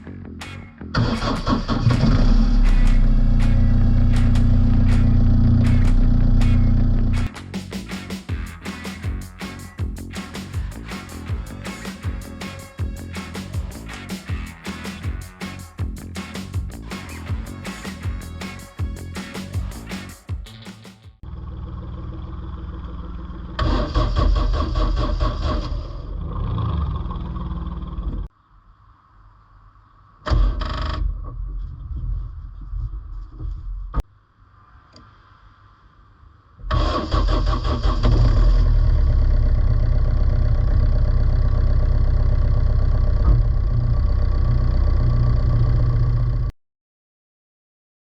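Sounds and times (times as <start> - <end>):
car engine running loudly: 1.0 - 7.3
car engine idling: 21.3 - 23.6, 39.1 - 46.4
car starter cranking: 36.7 - 38.7.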